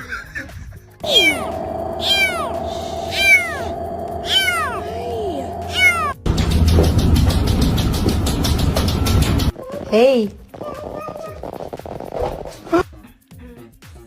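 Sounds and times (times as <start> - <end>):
cat meowing: 1.0 - 6.2.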